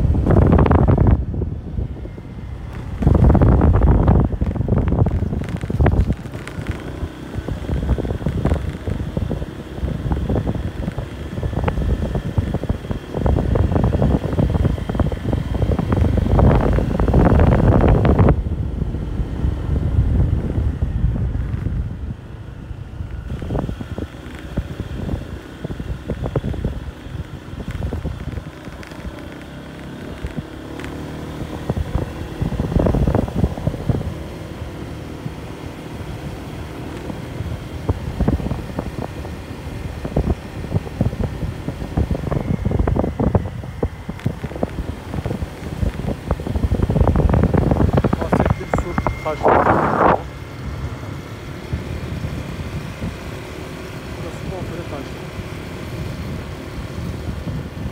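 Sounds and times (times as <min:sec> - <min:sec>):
motorcycle engine running: 0:00.0 - 0:57.9
wind buffeting microphone: 0:00.0 - 0:57.9.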